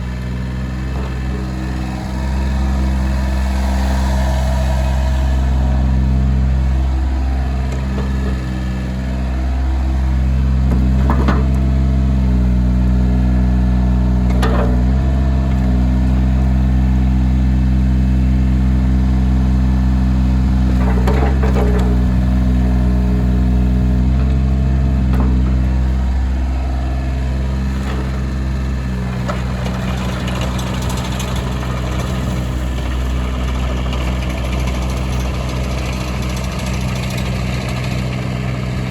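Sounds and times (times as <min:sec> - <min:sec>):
diesel excavator engine running: 0:00.0 - 0:38.9.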